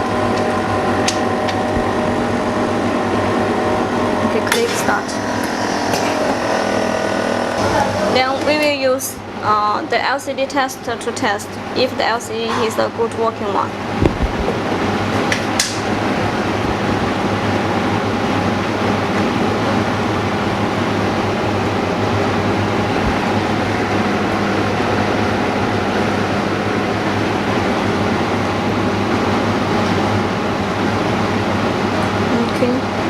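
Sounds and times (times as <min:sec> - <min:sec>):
machinery whirring with low hum: 0:00.0 - 0:33.0.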